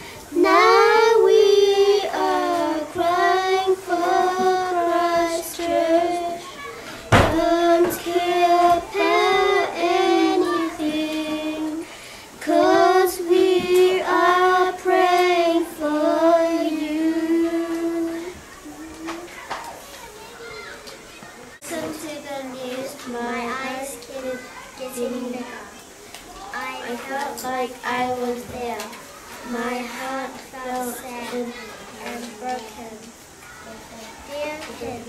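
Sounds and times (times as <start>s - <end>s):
child singing: 0.0s - 19.4s, 21.6s - 25.8s, 26.5s - 33.1s, 33.7s - 35.0s
sharp knock: 7.1s - 7.5s.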